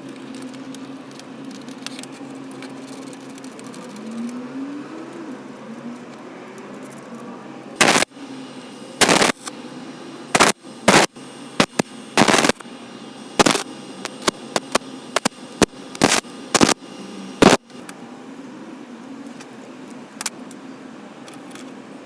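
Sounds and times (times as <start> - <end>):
harsh grinding bursts: 7.8 - 8.1, 9.0 - 9.4, 10.3 - 12.6, 13.4 - 16.8, 17.4 - 17.6
belt grinder running: 10.3 - 12.6, 13.4 - 17.6.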